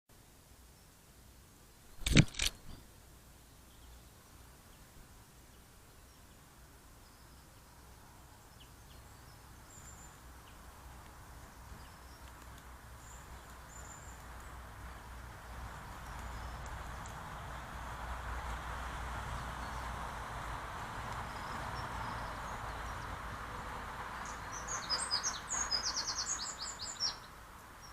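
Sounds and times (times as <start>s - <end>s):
quick clicks: 2.0s - 2.8s.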